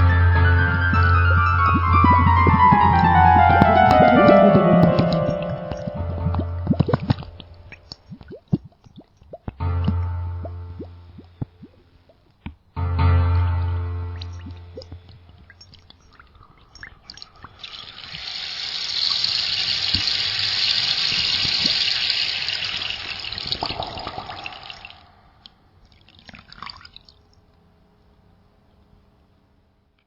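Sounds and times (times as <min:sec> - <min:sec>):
water dripping: 0:00.0 - 0:12.6, 0:14.1 - 0:27.4
pouring water: 0:00.4 - 0:12.2, 0:14.2 - 0:27.3
small splashes: 0:23.0 - 0:27.4.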